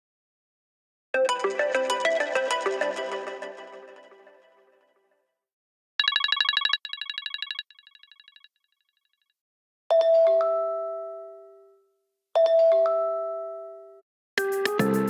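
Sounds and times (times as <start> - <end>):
rapid electronic ringtone trill: 6.0 - 8.5.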